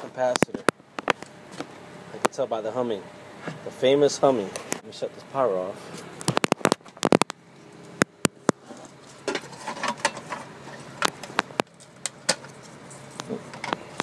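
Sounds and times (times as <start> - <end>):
sharp clicks and knocks: 0.3 - 2.4, 6.2 - 7.4.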